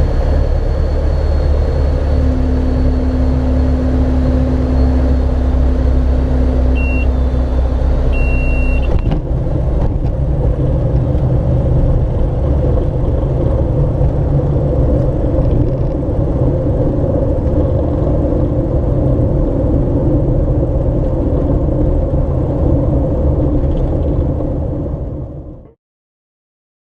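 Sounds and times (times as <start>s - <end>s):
propeller aircraft engine droning: 0.0s - 25.6s
short high beeps: 6.7s - 9.1s.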